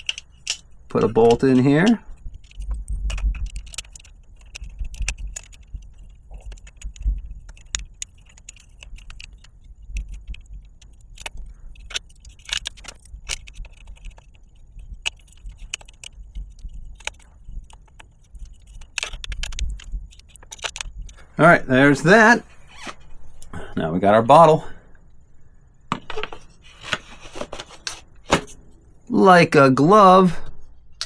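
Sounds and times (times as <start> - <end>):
metal clicks and clinks: 0.0 - 21.3.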